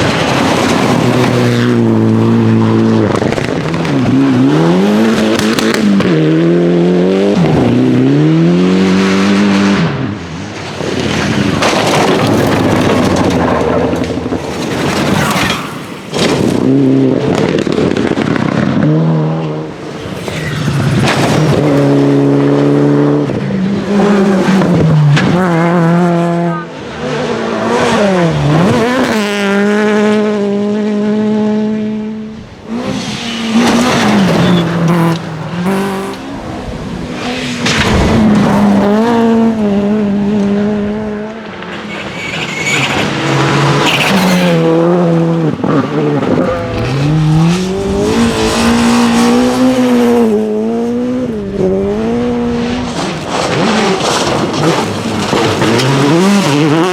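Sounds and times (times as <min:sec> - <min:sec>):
rally car engines revving: 0:00.0 - 0:56.9
tyre squeal: 0:33.0 - 0:36.3, 0:41.7 - 0:44.6.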